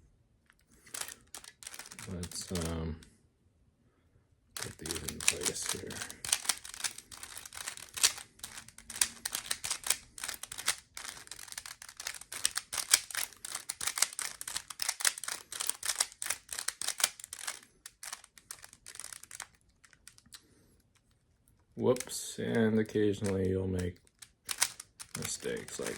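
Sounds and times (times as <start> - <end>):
puzzle cube plastic clicking: 0.5 - 3.1, 4.6 - 25.9.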